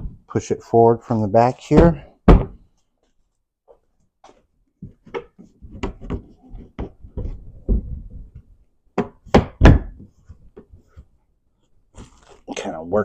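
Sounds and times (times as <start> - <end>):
hard thumps: 1.6 - 2.7
plastic panel knocking and clattering: 1.7 - 2.6, 4.8 - 10.8.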